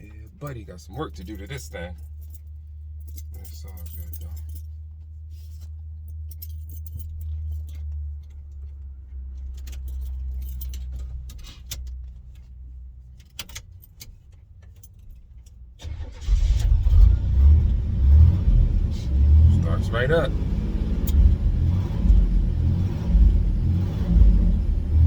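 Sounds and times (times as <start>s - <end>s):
car engine cranking and running: 0.0s - 25.0s
keys jangling: 0.2s - 4.8s, 5.4s - 12.4s, 13.1s - 15.7s.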